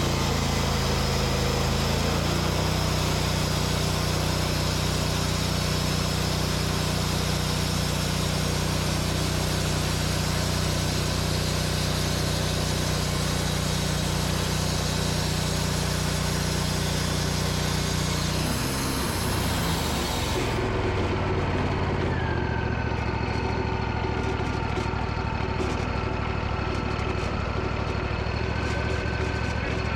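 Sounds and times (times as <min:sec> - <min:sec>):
sawmill engine running: 0:00.0 - 0:29.9
saw blade cutting log hiss: 0:02.8 - 0:20.6.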